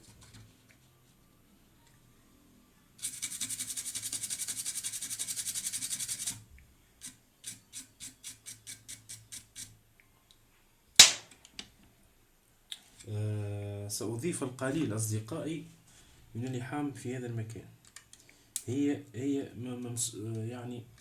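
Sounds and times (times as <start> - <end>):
sharp click: 11.0 - 11.4.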